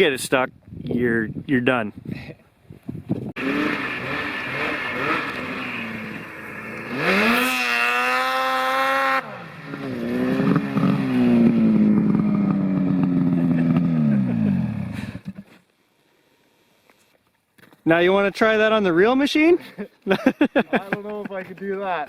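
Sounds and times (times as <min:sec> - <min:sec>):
snowmobile engine revving: 0:03.4 - 0:15.4.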